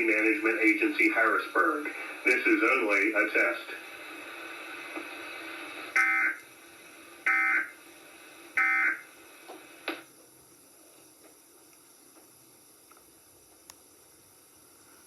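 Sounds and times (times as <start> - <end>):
low background hum: 0.0 - 15.0
harsh two-tone digital buzzes: 5.9 - 6.4, 7.2 - 7.8, 8.6 - 9.1.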